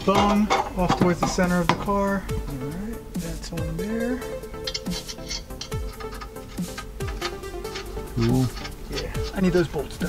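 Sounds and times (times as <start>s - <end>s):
crisp hi-hat ticks: 4.5s - 10.0s.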